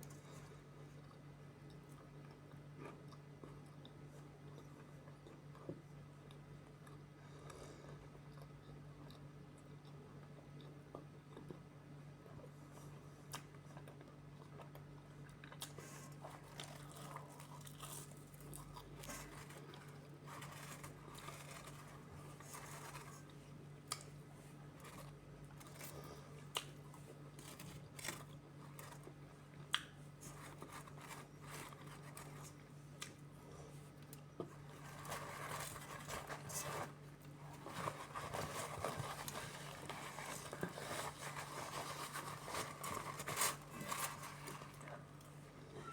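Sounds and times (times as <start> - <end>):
person chewing with crunches: 0.0 - 45.8.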